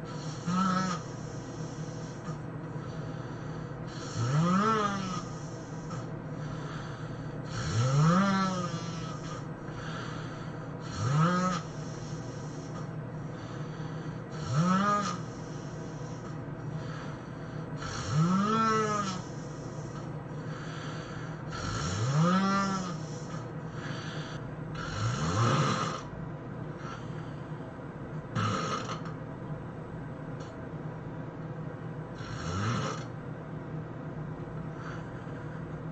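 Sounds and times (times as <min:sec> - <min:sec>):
man snoring heavily: 0:00.0 - 0:26.1, 0:28.3 - 0:29.1, 0:32.1 - 0:33.1.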